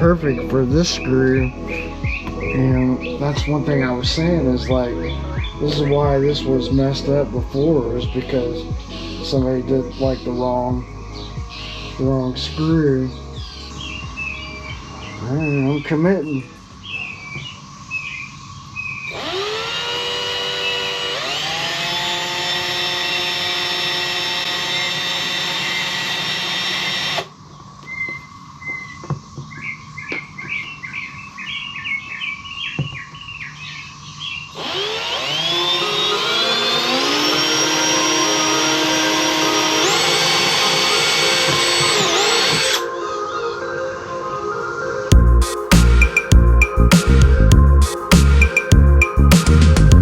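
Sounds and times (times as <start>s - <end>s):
birds chirping: 0.0s - 19.9s, 27.3s - 43.8s, 45.1s - 50.0s
cordless drill motor whine: 18.8s - 27.4s, 34.3s - 42.9s.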